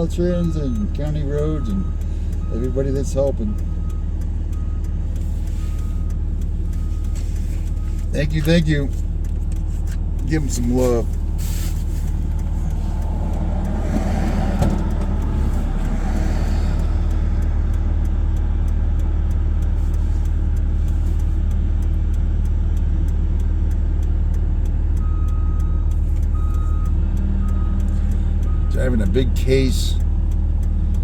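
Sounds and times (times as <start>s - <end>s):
regular ticking: 0.0s - 31.0s
truck engine and road rumble: 0.0s - 31.0s
backup alarm beeping: 0.3s - 9.0s.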